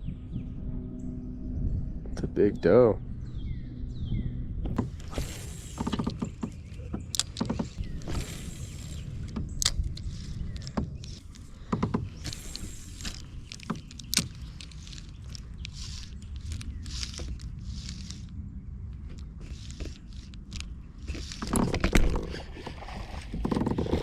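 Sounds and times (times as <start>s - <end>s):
boat creaks and knocks: 4.6s - 15.6s, 20.3s - 24.0s
paddle swishing through water: 4.7s - 18.3s, 19.0s - 24.0s.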